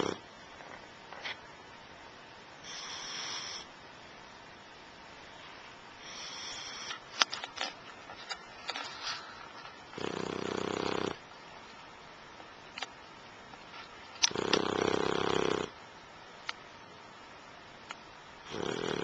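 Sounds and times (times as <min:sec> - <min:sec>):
person snoring: 0:00.0 - 0:00.2, 0:10.0 - 0:11.2, 0:14.3 - 0:15.7, 0:18.5 - 0:19.0.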